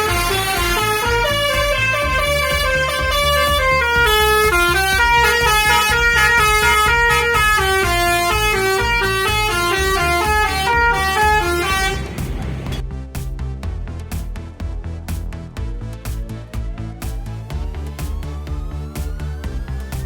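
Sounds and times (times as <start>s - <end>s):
multi-tone air horn melody: 0.0s - 12.4s
bus engine rumble: 0.0s - 12.9s.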